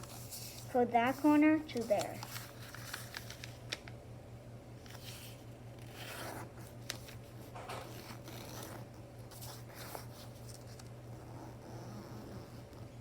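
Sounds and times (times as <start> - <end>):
paper being folded and creased: 0.0 - 3.9, 4.9 - 10.9.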